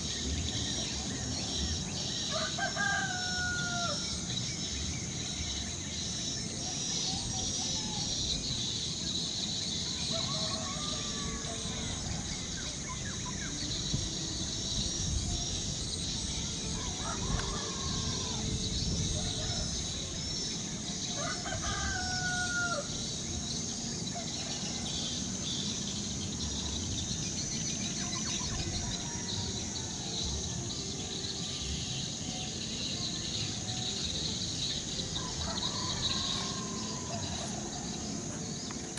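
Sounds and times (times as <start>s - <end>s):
rooster crowing: 2.3s - 4.1s, 21.1s - 22.9s, 35.2s - 37.8s.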